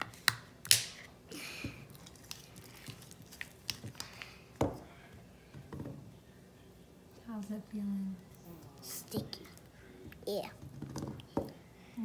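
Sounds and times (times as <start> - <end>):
sticky slime squelching: 1.8 - 4.5.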